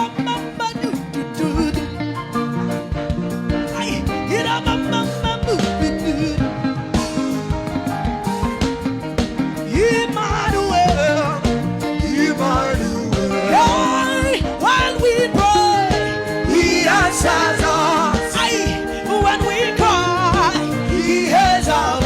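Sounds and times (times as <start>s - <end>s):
person singing with vibrato: 0.0s - 2.1s, 3.7s - 6.8s, 9.7s - 22.0s
steady drum beat: 1.6s - 22.0s.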